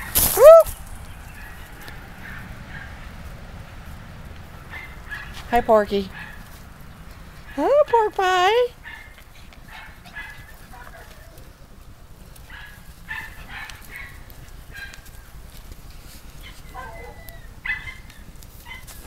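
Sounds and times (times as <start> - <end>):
puppies yipping: 0.1 - 3.1, 4.7 - 5.4, 8.8 - 11.5, 12.4 - 15.3, 16.3 - 19.0.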